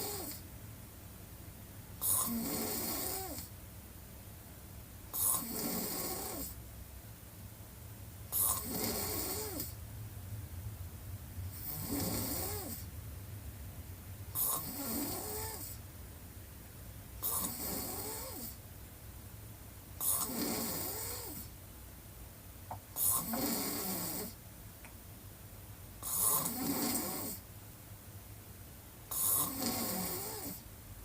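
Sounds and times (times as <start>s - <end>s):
woman snoring: 0.0s - 0.4s, 2.0s - 3.5s, 5.1s - 6.6s, 8.3s - 9.8s, 11.5s - 12.9s, 14.3s - 15.8s, 17.2s - 18.6s, 20.0s - 21.5s, 23.0s - 24.4s, 26.0s - 27.4s, 29.1s - 30.6s
low steady hum: 0.0s - 2.0s, 3.4s - 5.2s, 6.5s - 17.6s, 18.2s - 20.0s, 21.3s - 23.5s, 24.3s - 26.0s, 27.4s - 29.1s, 30.6s - 31.0s.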